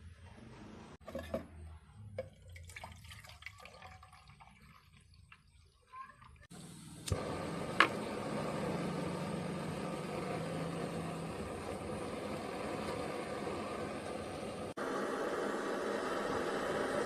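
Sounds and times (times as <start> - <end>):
gas burner hissing: 6.4 - 17.0
stove igniter clicks: 7.0 - 8.1.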